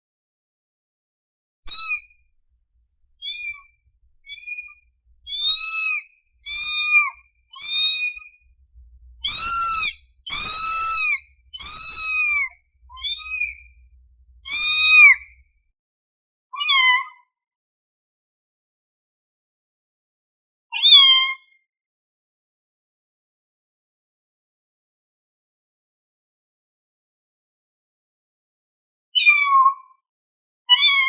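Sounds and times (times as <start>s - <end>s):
kitten meowing: 1.7s - 2.1s, 3.2s - 8.3s, 8.9s - 15.3s, 30.7s - 31.0s.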